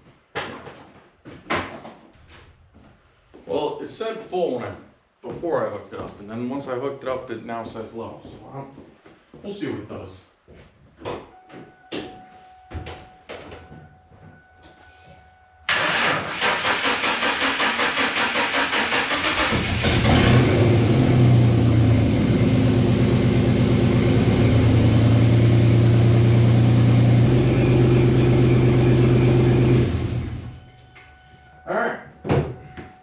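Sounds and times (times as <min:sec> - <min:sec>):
car starter cranking: 0:15.7 - 0:20.8
car engine idling: 0:18.9 - 0:30.7.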